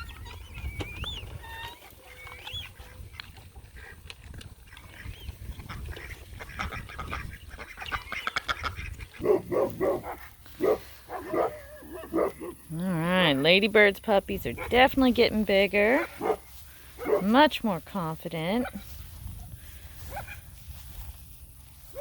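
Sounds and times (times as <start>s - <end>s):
puppies squeaking and yelping: 0.0s - 3.2s
chickens: 0.0s - 12.7s.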